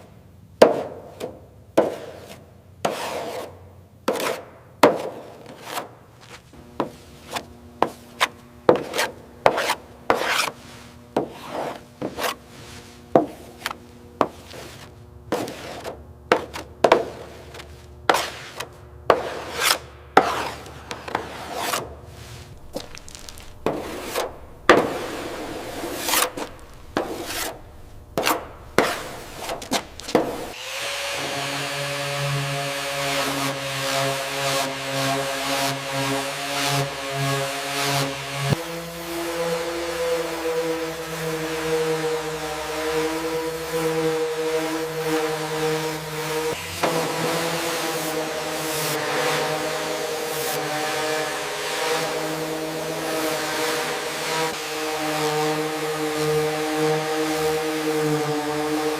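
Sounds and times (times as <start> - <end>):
hand tool scraping a surface: 1.8 - 58.9
faint steady hum: 6.1 - 30.6.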